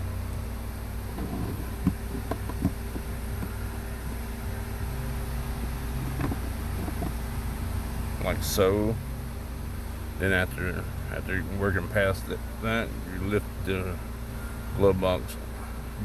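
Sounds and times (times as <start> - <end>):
steady low hum: 0.0 - 16.0
plastic clicks and knocks: 1.2 - 3.5, 6.1 - 7.1.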